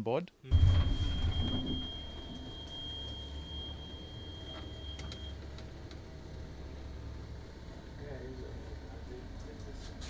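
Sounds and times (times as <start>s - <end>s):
thin high whine: 0.5s - 5.5s
low cabin hum: 0.5s - 9.6s.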